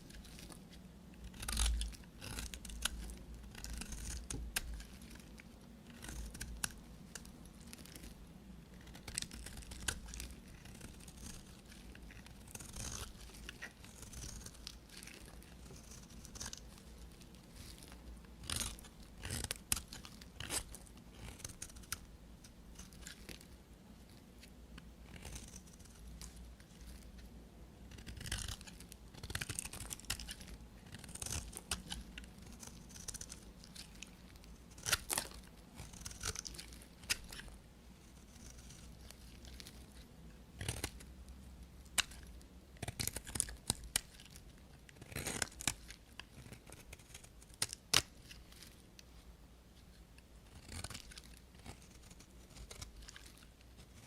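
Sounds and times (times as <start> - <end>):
knife cutting through soap: 45.0 - 48.1, 50.5 - 53.3.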